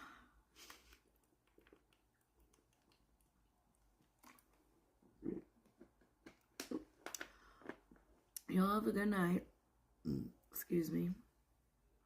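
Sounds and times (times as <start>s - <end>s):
faint chewing: 0.6s - 8.5s.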